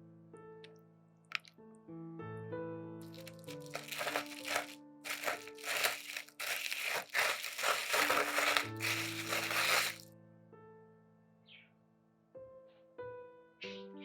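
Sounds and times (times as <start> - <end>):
soft piano music: 0.0 - 4.4, 10.2 - 14.0
crinkling crunching noises: 3.0 - 10.0.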